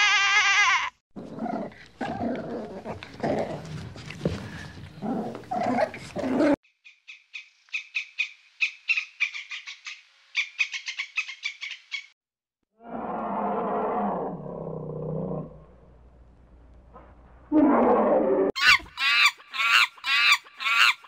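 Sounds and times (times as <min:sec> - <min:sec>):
low drawn-out animal call: 0:17.5 - 0:21.0.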